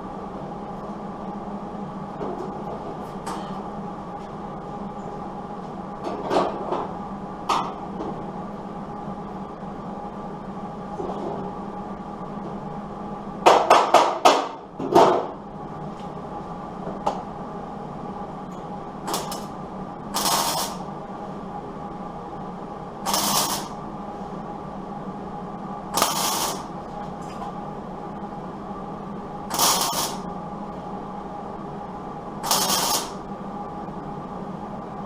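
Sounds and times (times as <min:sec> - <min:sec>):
steady electrical hum: 0:00.0 - 0:35.0
hissing welding bursts: 0:20.1 - 0:20.8, 0:23.0 - 0:23.8, 0:26.0 - 0:26.7, 0:29.5 - 0:30.2, 0:32.4 - 0:33.2.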